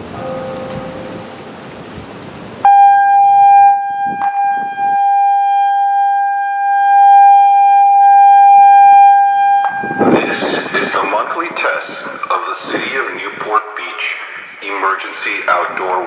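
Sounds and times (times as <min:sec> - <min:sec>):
steady background hiss: 0:00.0 - 0:05.2, 0:09.1 - 0:16.0
emergency warning tone: 0:02.6 - 0:11.6.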